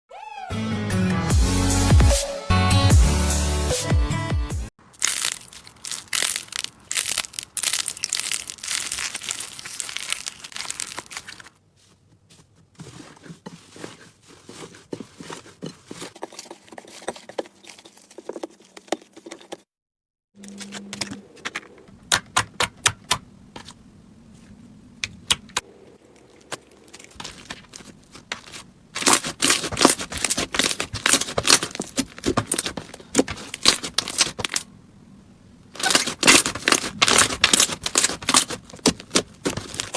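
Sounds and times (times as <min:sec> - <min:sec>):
slime crackling and clicking: 0:05.0 - 0:11.3, 0:29.0 - 0:34.6.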